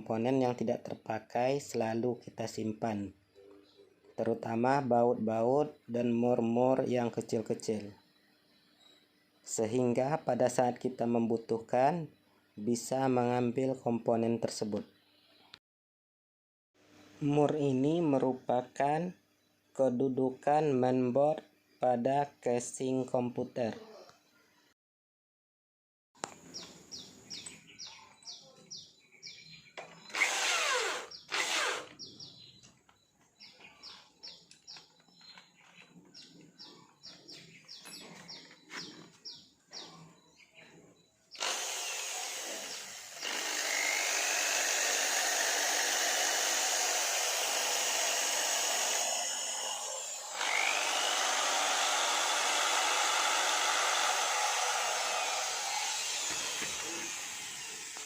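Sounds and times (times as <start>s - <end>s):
small power tool running: 30.0s - 32.3s, 41.4s - 58.0s.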